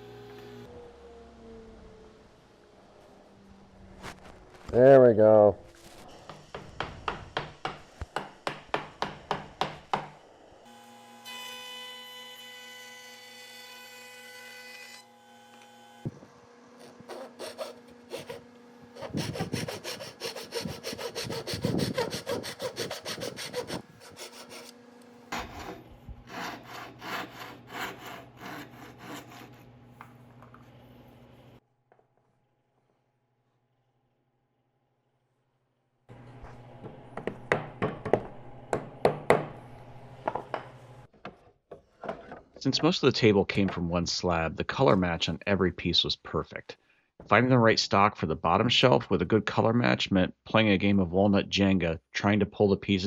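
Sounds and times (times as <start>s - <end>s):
wood being worked by hand: 16.8s - 29.6s.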